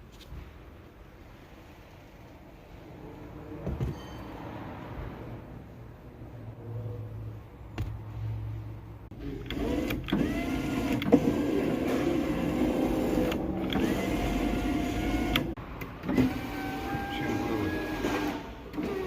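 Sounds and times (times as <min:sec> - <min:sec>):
electric window motor whining: 0:09.2 - 0:19.0.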